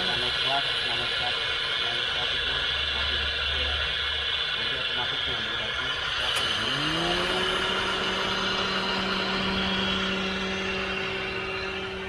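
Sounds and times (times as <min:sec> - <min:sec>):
air conditioning compressor whine: 0:00.0 - 0:12.0
car engine idling: 0:00.0 - 0:12.0.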